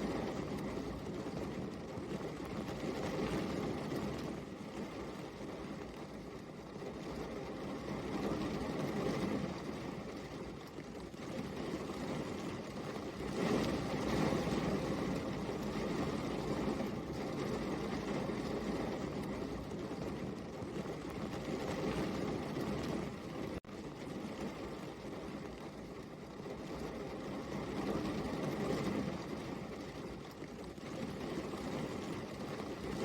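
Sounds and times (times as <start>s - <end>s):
steady rain falling: 0.0s - 33.0s.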